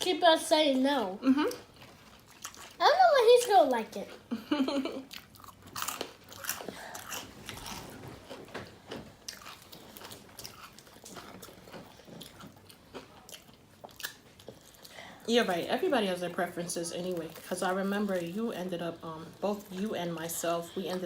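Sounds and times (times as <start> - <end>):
crunchy chewing: 1.5 - 2.8, 5.1 - 15.0.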